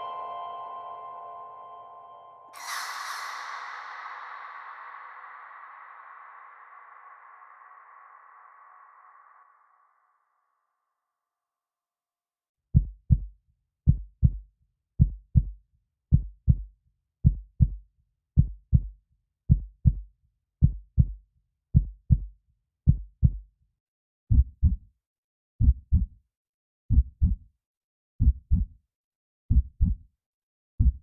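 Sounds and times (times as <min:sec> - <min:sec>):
heartbeat thuds: 0:24.3 - 0:24.8, 0:26.9 - 0:27.4, 0:28.2 - 0:28.7, 0:30.8 - 0:31.0.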